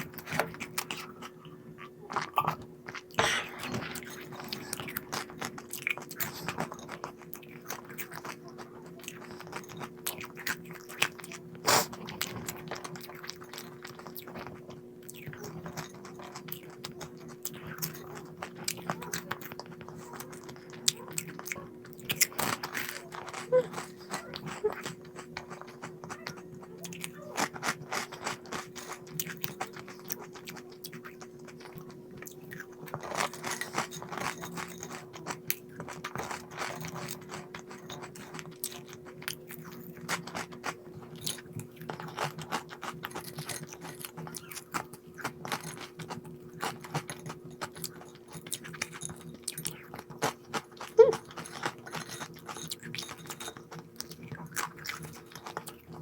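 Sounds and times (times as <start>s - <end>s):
steady low hum: 0.0s - 16.8s
person chewing crisp snacks: 0.0s - 56.0s.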